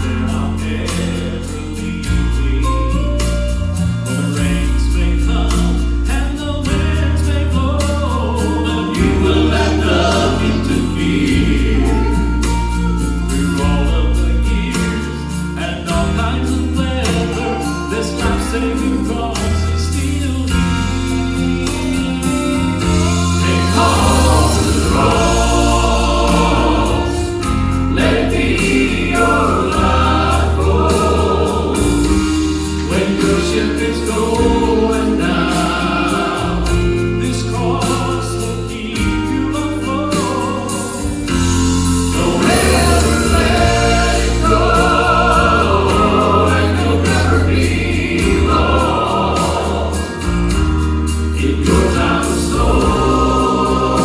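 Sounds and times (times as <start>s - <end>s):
band accompaniment: 0.0s - 54.0s
vocal quartet singing in harmony: 0.0s - 54.0s.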